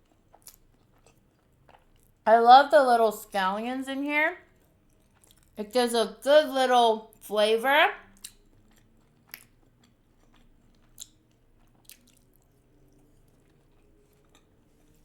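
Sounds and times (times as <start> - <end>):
faint chewing: 0.0 - 2.2, 4.4 - 5.6, 8.0 - 15.0
wet mouth clicks: 9.3 - 9.5.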